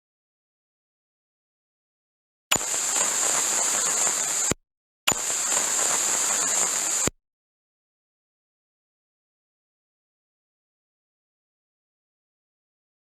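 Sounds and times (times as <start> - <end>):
crackling radio static hiss: 2.5 - 7.2.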